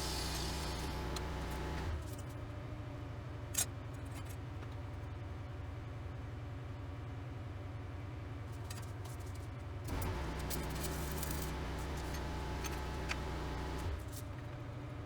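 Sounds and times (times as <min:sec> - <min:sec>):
welder arc crackling: 0:00.0 - 0:02.0, 0:09.9 - 0:14.0.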